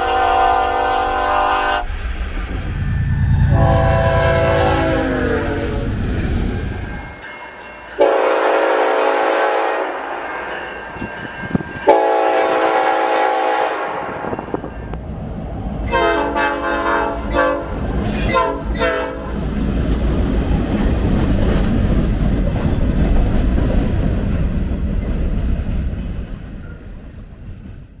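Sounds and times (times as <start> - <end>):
locomotive horn blasts: 0.0 - 2.0, 2.6 - 6.8, 8.0 - 10.1, 11.9 - 14.4, 15.9 - 19.4
train rumbling past: 0.0 - 28.0.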